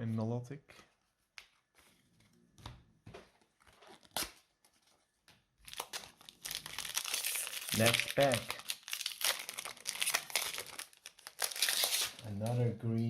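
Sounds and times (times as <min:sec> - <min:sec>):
foil wrapper crinkling: 0:05.6 - 0:12.3.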